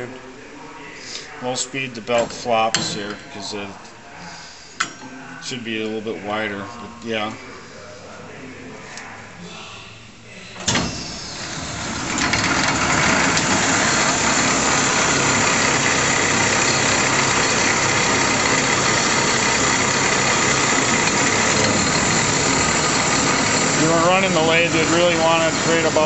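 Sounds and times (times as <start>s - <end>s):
drive belt flopping: 11.4s - 26.0s
wood lathe motor running: 11.4s - 26.0s.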